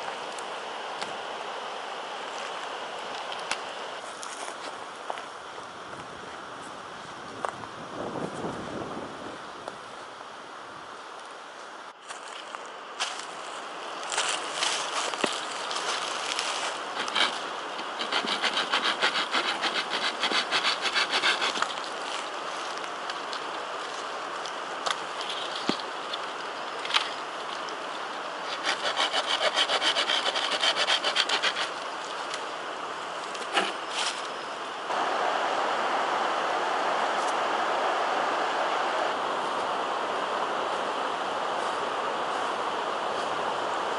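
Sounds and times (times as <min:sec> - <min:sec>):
hand saw cutting wood: 0:16.9 - 0:21.9, 0:28.4 - 0:31.8
steady rushing noise: 0:34.8 - 0:43.9.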